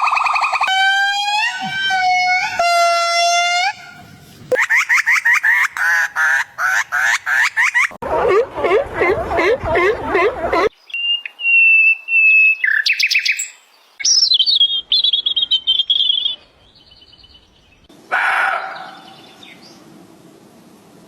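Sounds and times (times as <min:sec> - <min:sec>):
rough bird call: 0:00.0 - 0:06.0.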